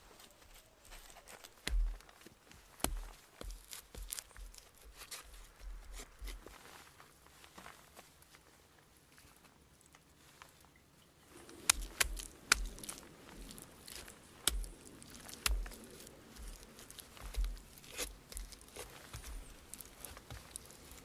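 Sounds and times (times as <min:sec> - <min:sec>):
rustling: 0:00.0 - 0:21.0
sharp snaps and knocks: 0:01.4 - 0:06.4, 0:11.4 - 0:21.0
dull thumps: 0:14.4 - 0:20.7.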